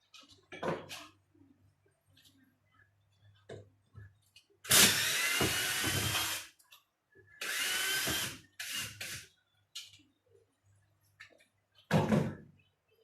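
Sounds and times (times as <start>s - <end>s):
power drill boring into wall: 4.7s - 6.5s, 7.4s - 9.2s.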